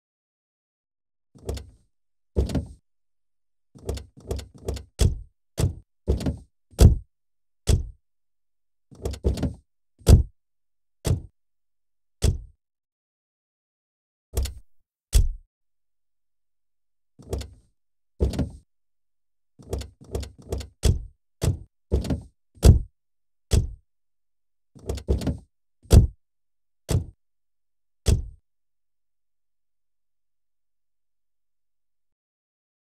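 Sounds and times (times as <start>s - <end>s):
car door closing thunks: 4.6s - 7.0s, 7.7s - 8.0s, 9.0s - 10.3s, 12.2s - 12.5s, 18.2s - 18.6s, 20.5s - 22.9s, 23.5s - 23.8s, 24.8s - 26.2s, 28.1s - 28.4s.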